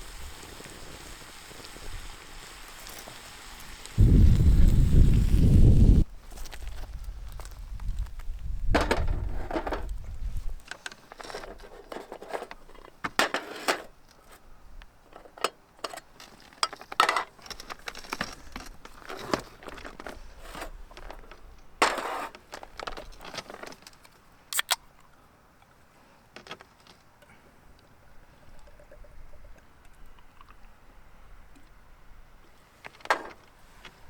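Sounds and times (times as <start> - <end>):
scrape or rustle: 0.0 - 8.2, 8.8 - 14.5, 15.2 - 24.7.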